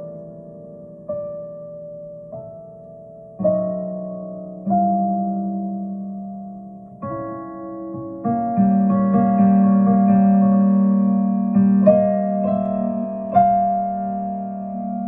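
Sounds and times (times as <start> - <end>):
keyboard playing sustained chords: 10.6 - 15.0.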